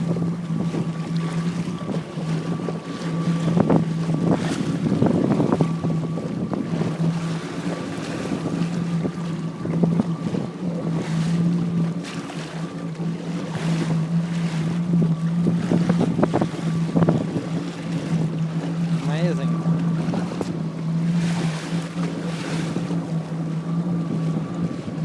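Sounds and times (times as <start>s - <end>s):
jetski engine humming: 0.0s - 25.0s
wind buffeting microphone: 0.0s - 25.0s
water splashing: 10.9s - 25.0s.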